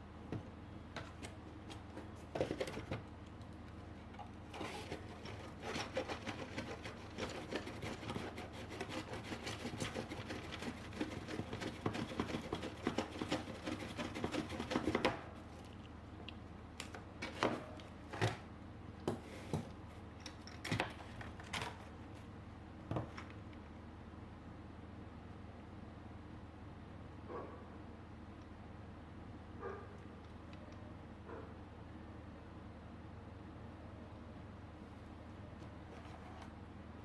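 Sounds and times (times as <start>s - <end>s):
handling noise rubbing and clicking: 1.0s - 15.8s, 35.6s - 36.6s.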